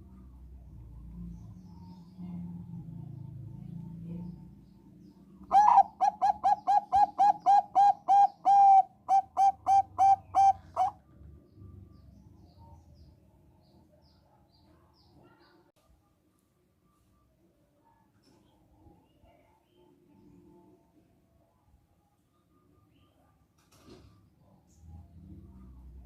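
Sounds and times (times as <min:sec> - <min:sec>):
dove cooing: 0:05.5 - 0:11.0.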